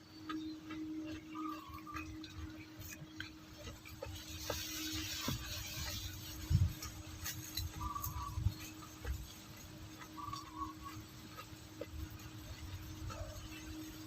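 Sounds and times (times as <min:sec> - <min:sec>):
chewing and crunching: 0:00.0 - 0:14.0
faint steady hum: 0:00.0 - 0:14.0.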